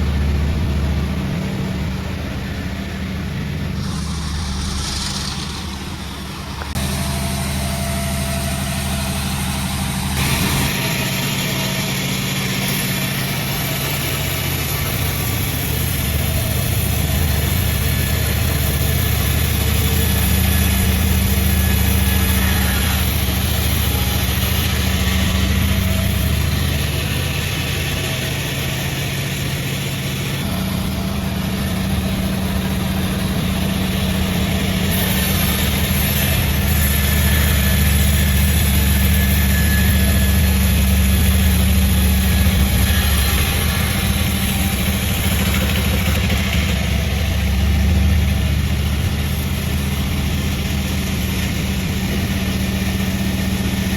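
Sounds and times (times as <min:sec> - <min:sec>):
engine drone: 0:00.0 - 0:53.9
saw hissing through wood: 0:03.6 - 0:53.9.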